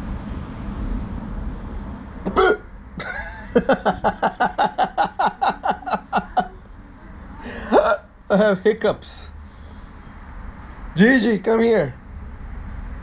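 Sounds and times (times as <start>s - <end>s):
loud hiccup: 2.3s - 2.7s.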